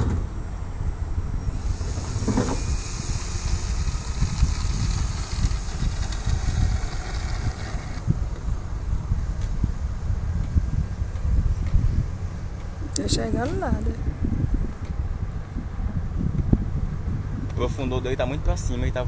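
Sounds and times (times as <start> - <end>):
model plane motor whine: 0.0 - 8.1
wind buffeting microphone: 0.0 - 19.0.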